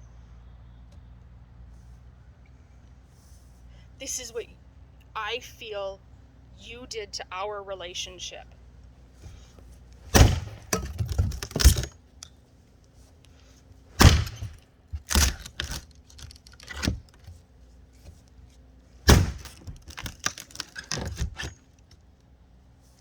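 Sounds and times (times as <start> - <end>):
nails and wood clattering: 10.0 - 12.0, 14.0 - 17.4, 19.1 - 21.6
wood knocking and cracking: 10.1 - 12.0, 14.0 - 17.4, 19.1 - 21.6.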